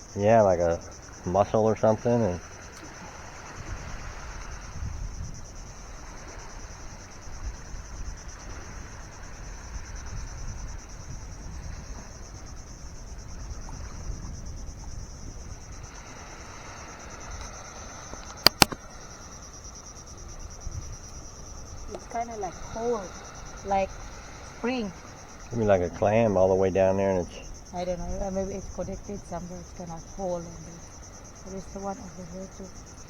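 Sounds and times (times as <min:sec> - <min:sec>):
wind rumble on microphone: 0:00.0 - 0:19.2, 0:20.1 - 0:33.0
insect chorus chirring: 0:00.0 - 0:33.0
sharp clicks: 0:18.2 - 0:18.8.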